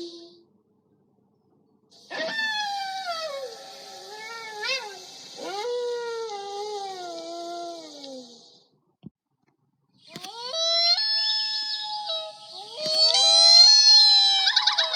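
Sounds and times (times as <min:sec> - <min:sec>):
steady hiss: 0:01.9 - 0:08.4.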